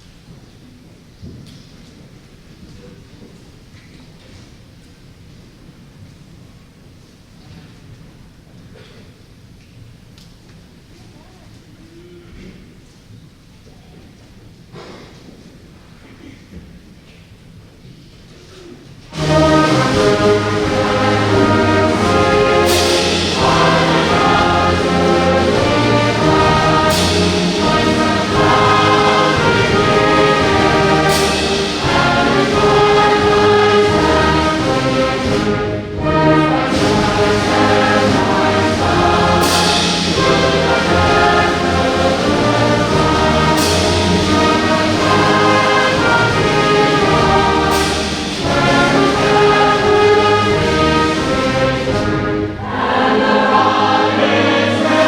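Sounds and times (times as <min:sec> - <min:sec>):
brass band playing slow chords: 0:19.1 - 0:55.0
cymbal crash: 0:19.2 - 0:51.1.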